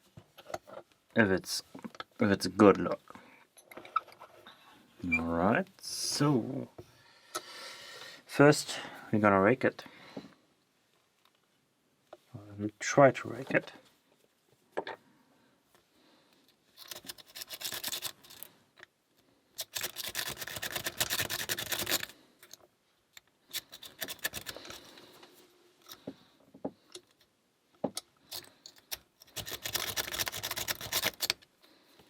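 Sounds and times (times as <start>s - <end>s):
lock pick scraping in padlock: 16.8s - 18.5s, 19.6s - 22.6s, 23.5s - 24.9s, 28.3s - 31.5s.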